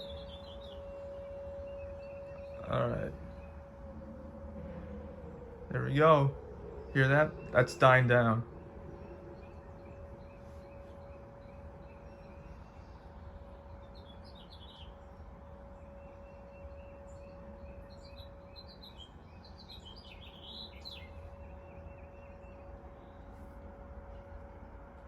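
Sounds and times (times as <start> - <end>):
birds chirping: 0.0 - 25.0
warning siren steady tone: 0.0 - 25.0.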